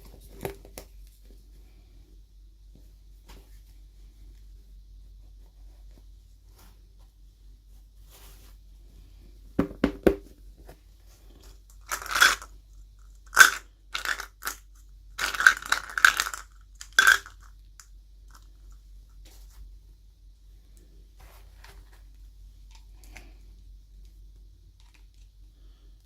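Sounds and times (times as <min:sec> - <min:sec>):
plastic packaging rustling: 0:11.8 - 0:12.5, 0:15.2 - 0:17.4.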